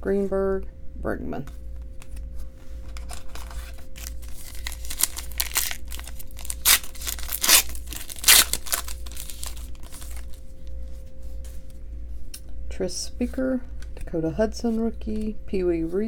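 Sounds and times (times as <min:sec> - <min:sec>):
wrapper tearing and crinkling: 0:03.0 - 0:10.4.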